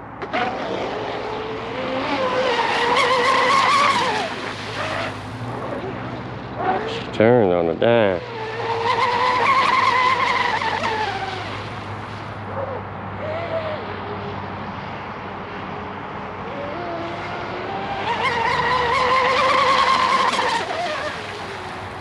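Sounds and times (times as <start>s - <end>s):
electric boat motor whining: 0.0s - 22.0s.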